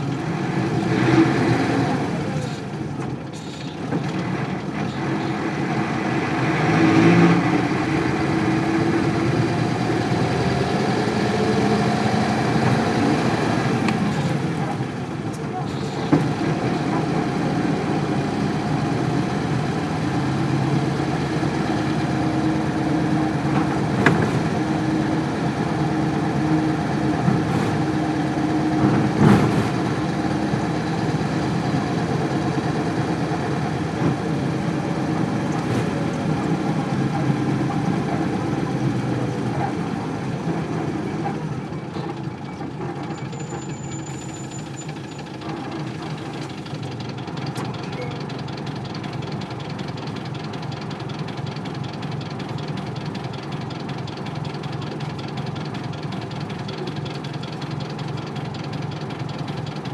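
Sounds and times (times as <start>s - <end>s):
diesel bus engine running: 0.0s - 59.9s
sharp knocks and rattles: 22.8s - 34.2s.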